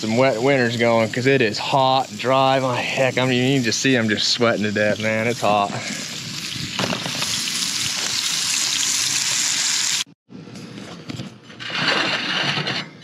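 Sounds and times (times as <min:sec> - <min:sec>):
food sizzling in a hot pan: 0:00.4 - 0:10.2.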